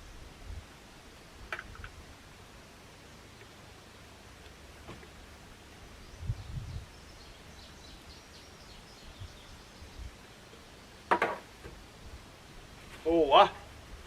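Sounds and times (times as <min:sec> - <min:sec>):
distant bird chirps: 0:04.8 - 0:12.2.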